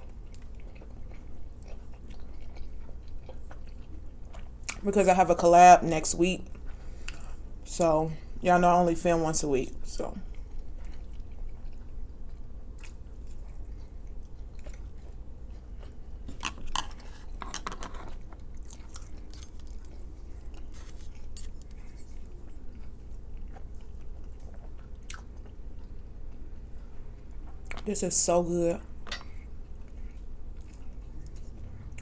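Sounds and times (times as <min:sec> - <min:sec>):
person chewing and crunching food: 0:00.0 - 0:04.8, 0:06.4 - 0:07.6, 0:10.2 - 0:27.9, 0:28.9 - 0:32.0.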